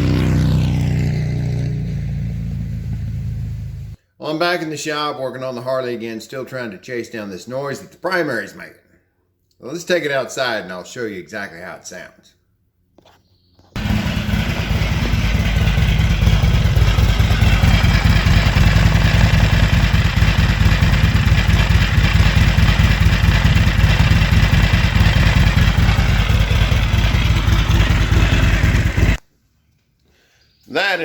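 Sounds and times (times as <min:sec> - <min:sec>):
motorcycle engine idling: 0:01.0 - 0:04.0, 0:13.8 - 0:29.2.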